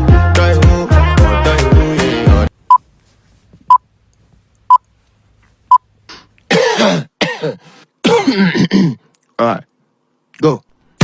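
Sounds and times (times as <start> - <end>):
afrobeat song: 0.0 - 2.6.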